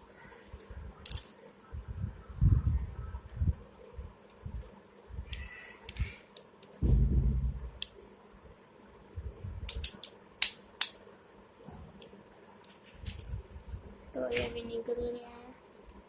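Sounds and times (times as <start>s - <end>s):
dull handling knock: 6.8s - 7.8s.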